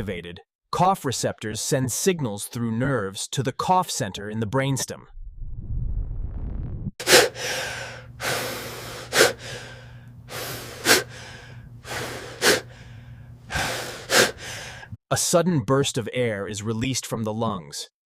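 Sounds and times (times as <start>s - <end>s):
low rumble: 5.1s - 6.9s
person coughing: 7.0s - 7.6s
noisy breath drawn in: 7.0s - 15.0s.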